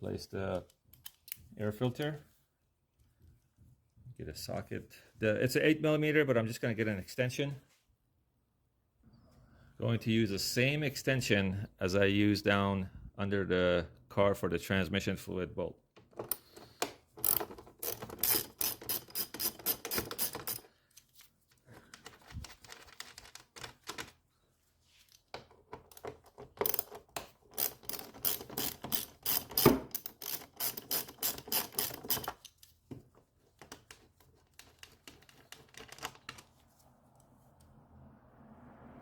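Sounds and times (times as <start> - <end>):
ratchet wrench clicking: 17.2 - 20.6, 27.6 - 32.5.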